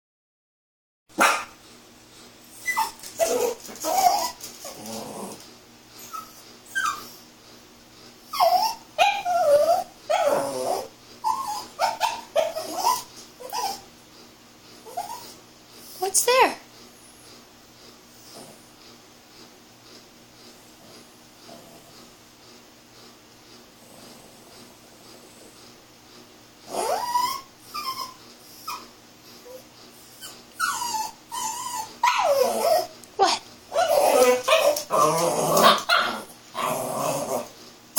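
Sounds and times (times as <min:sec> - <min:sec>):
puppy whining and yipping: 0:02.5 - 0:05.0, 0:06.0 - 0:07.2, 0:08.2 - 0:13.9, 0:14.8 - 0:15.4, 0:26.7 - 0:33.0, 0:33.7 - 0:37.4.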